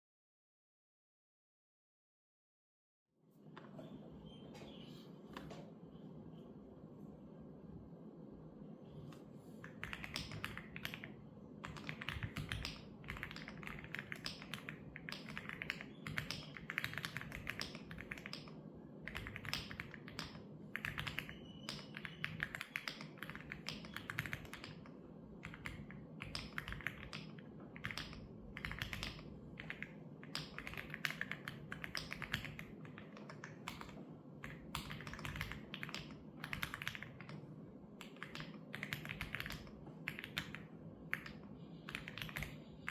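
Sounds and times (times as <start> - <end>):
faint low hum: 3.3 - 42.9
typing on keyboard: 9.6 - 42.9.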